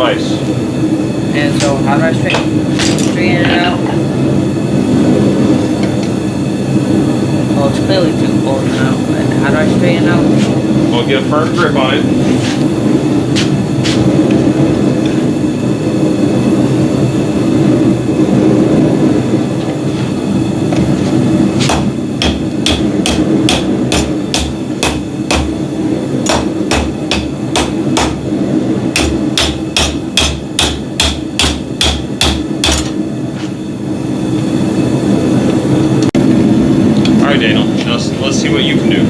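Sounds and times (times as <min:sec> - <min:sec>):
hammer ringing on anvil: 0:29.0 - 0:33.0.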